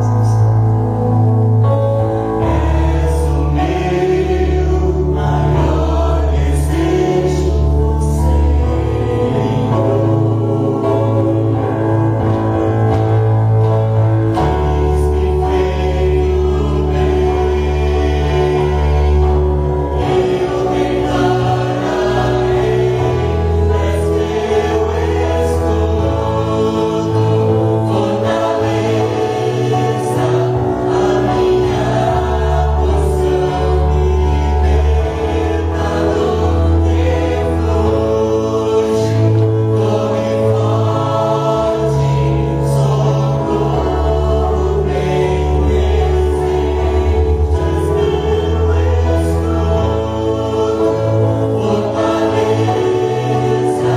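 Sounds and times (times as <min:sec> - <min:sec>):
choir singing gospel song: 0:00.0 - 0:00.7, 0:01.6 - 0:53.9
held bass notes: 0:00.0 - 0:53.9
instrumental accompaniment: 0:00.0 - 0:53.9.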